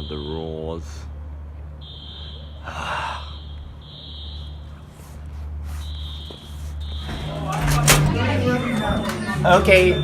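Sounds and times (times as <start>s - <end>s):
fire alarm beeping: 1.8s - 2.6s, 3.3s - 4.7s, 5.8s - 10.0s.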